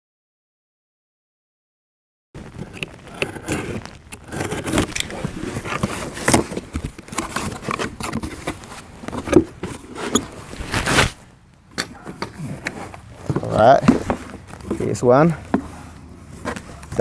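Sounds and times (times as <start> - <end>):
rustling scrapes of packages: 2.4 - 11.3.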